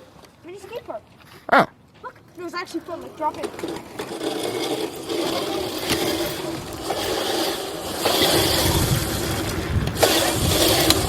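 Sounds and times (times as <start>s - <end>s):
tyre and wind noise: 0.0s - 11.0s
bike jolting knocks: 3.2s - 11.0s
faint electric motor hum: 3.6s - 11.0s.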